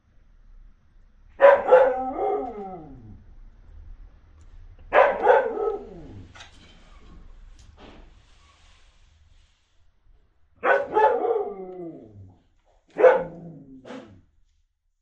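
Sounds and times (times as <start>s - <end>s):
dog yelp: 1.4s - 2.7s, 4.9s - 6.2s, 10.6s - 11.6s, 13.0s - 13.4s
dog barking: 1.4s - 3.0s, 4.9s - 6.3s, 10.6s - 12.2s, 12.9s - 14.2s.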